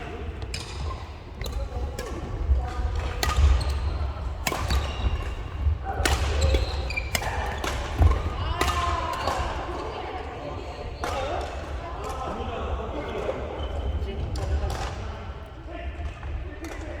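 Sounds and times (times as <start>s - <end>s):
racket hitting shuttlecock: 0.5s - 9.8s.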